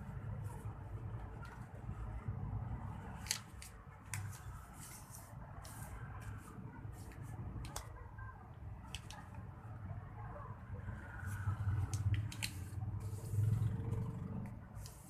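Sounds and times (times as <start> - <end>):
paper rustling: 3.2 - 7.9.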